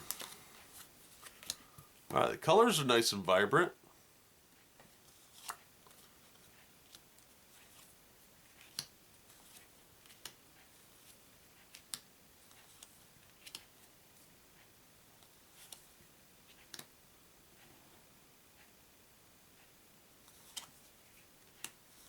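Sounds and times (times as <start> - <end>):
playing cards clicking: 0.0 - 0.4.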